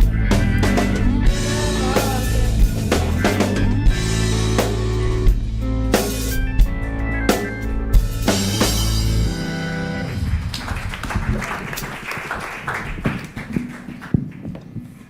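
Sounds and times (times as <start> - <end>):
band playing final chord: 0.0 - 10.9
applause: 10.1 - 14.6.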